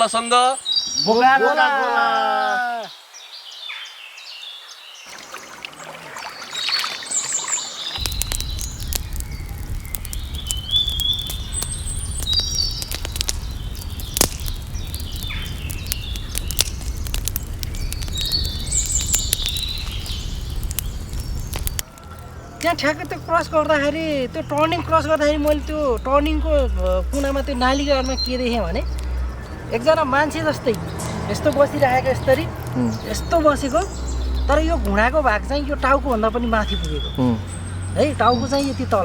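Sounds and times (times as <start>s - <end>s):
birds chirping and whistling: 0.0s - 1.3s, 2.9s - 39.0s
sharp clicks and crackles: 8.0s - 35.0s
low rumble: 8.0s - 39.0s.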